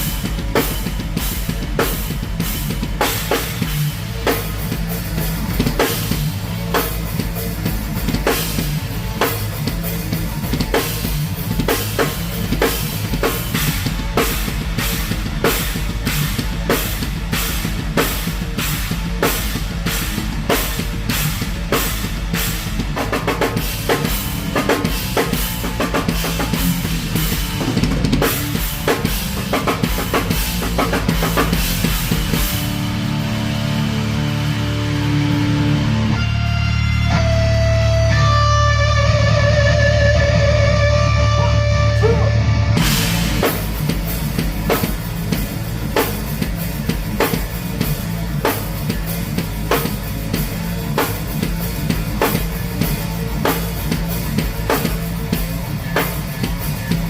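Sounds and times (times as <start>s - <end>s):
rapid drum kit hits: 0.0s - 38.6s, 41.7s - 57.0s
heavy rock band playing: 0.0s - 57.0s
sustained guitar chord ringing: 32.7s - 42.8s.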